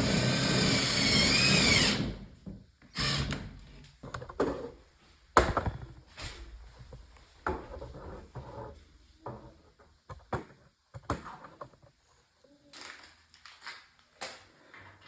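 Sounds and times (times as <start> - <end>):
power drill whining: 0.0 - 2.2, 2.9 - 3.4.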